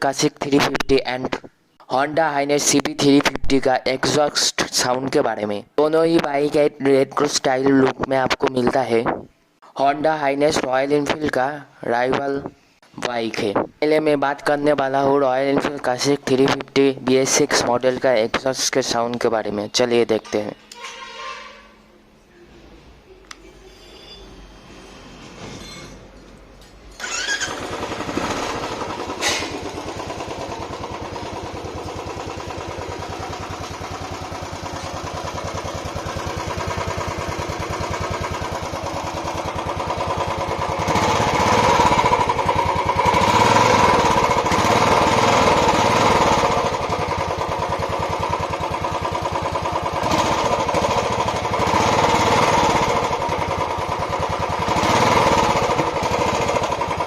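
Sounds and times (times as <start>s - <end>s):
motorcycle engine idling and revving: 27.0s - 57.0s.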